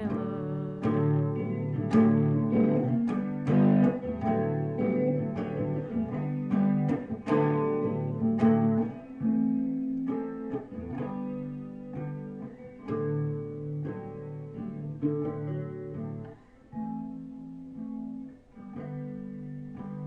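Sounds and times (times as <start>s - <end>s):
acoustic guitar playing: 0.0s - 20.0s.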